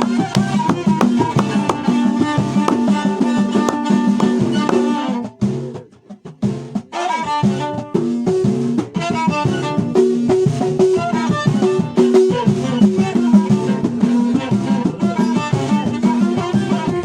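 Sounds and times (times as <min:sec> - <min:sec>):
steady percussion: 0:00.0 - 0:06.9
folk music melody: 0:00.0 - 0:17.0.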